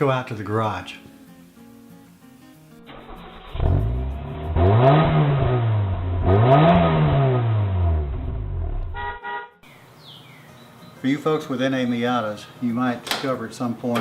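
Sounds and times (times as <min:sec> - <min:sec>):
car engine revving: 0:02.9 - 0:09.2.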